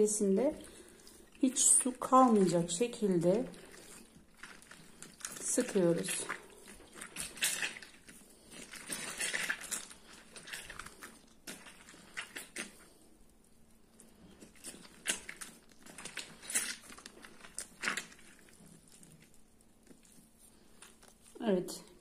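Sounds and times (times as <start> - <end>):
squishing and crunching in squeezer: 0.0 - 22.0.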